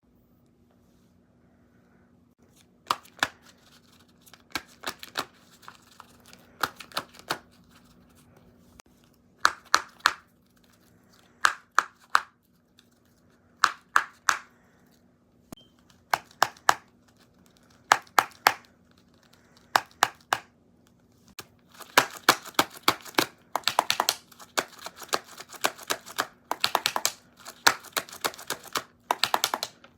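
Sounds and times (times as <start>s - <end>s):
faint steady hum: 0.0s - 29.9s
computer keyboard typing: 21.8s - 29.8s.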